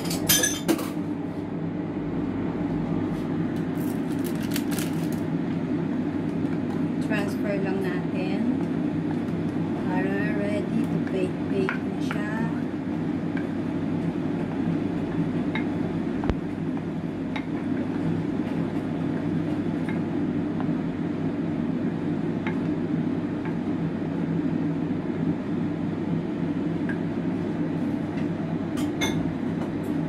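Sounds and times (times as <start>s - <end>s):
utensils clinking against dishes: 0.0s - 1.0s
low mechanical hum: 0.0s - 30.0s.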